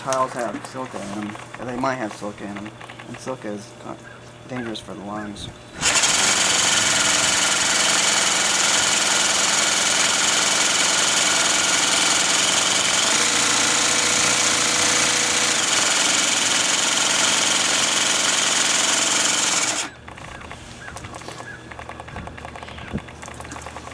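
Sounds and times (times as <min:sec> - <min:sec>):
jigsaw cutting ceramic tile: 0:05.7 - 0:20.0.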